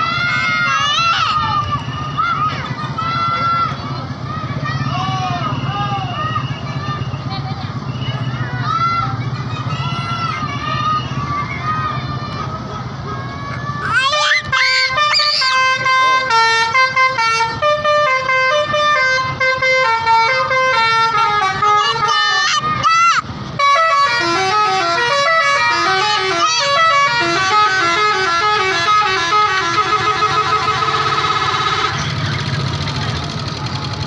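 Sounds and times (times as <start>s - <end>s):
musical air horn melody: 14.0s - 22.6s, 23.6s - 32.2s.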